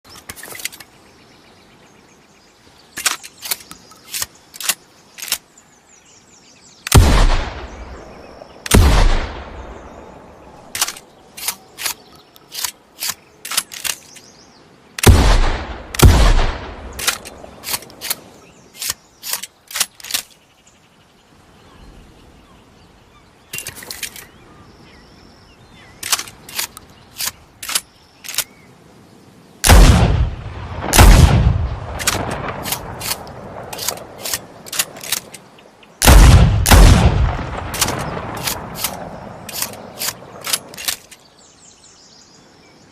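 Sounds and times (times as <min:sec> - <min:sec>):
shotgun shots: 0:06.9 - 0:07.8, 0:08.7 - 0:09.6, 0:15.0 - 0:17.3, 0:29.6 - 0:34.4, 0:36.0 - 0:40.8
shotgun clicking: 0:10.8 - 0:14.2, 0:16.0 - 0:20.3, 0:26.0 - 0:28.5, 0:32.0 - 0:36.9, 0:37.7 - 0:41.2.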